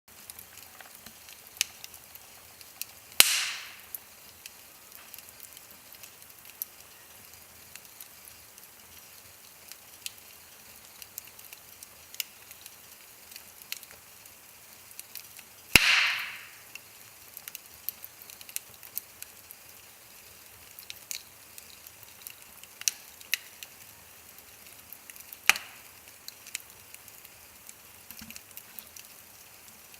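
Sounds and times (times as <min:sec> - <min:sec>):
wood fire crackling: 0:00.1 - 0:29.9
loud pops of fire: 0:00.2 - 0:06.8, 0:14.9 - 0:23.8, 0:24.4 - 0:29.2.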